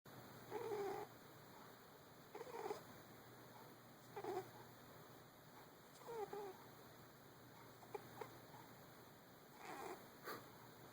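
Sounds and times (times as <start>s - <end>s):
cat snoring: 0.5s - 1.1s, 2.3s - 2.8s, 4.1s - 4.5s, 6.0s - 6.6s, 9.6s - 10.0s.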